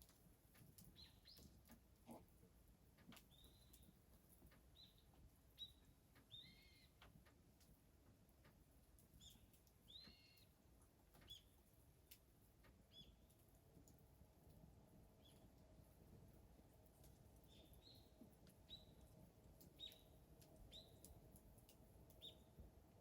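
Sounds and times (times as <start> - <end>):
faint bird chirps: 5.6 - 7.0, 9.2 - 10.5.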